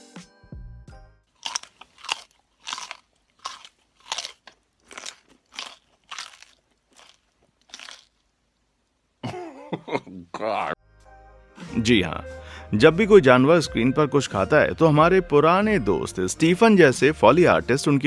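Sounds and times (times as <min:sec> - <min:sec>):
person chewing crunchy food: 0:01.4 - 0:08.6.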